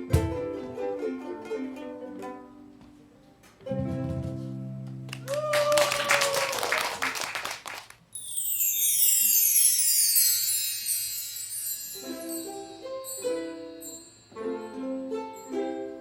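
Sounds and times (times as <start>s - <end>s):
plucked ukulele notes: 0.0s - 3.0s, 3.6s - 5.1s
people clapping: 5.0s - 8.0s.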